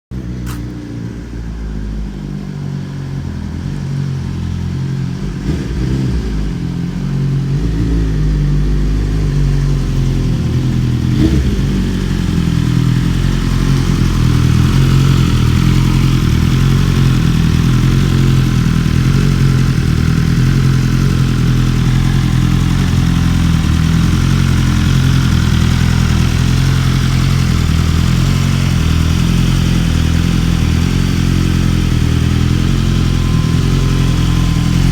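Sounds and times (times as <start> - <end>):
motorcycle engine cruising: 0.2 - 34.9.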